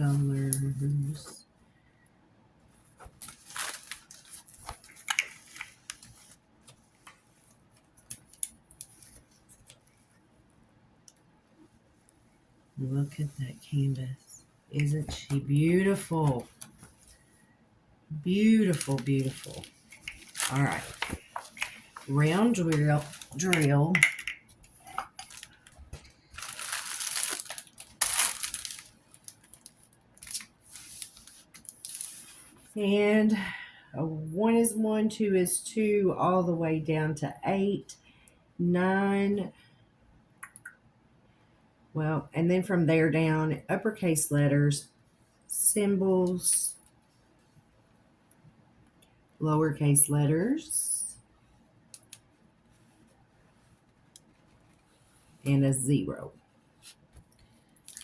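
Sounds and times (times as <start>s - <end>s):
plastic film crackling and clicking: 3.0s - 7.2s, 18.5s - 32.3s, 56.8s - 58.0s
plastic packaging crinkling: 3.1s - 6.4s, 18.3s - 32.6s, 56.8s - 58.0s.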